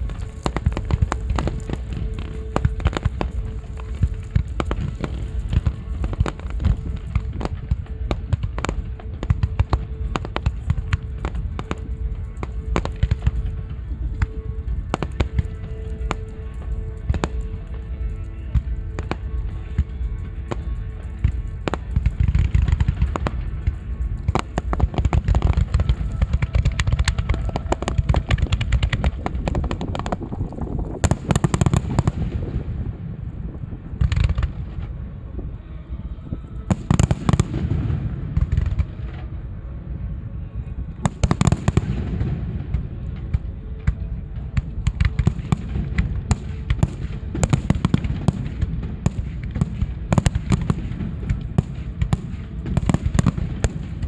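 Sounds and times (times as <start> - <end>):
fireworks bangs and booms: 0.0 - 35.6, 36.6 - 54.0
fireworks crackling bursts: 0.0 - 54.0.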